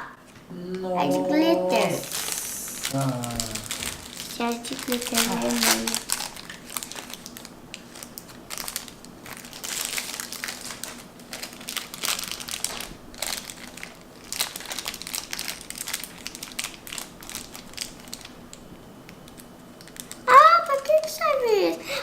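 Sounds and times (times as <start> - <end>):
plastic wrapping crinkling: 2.0 - 20.8.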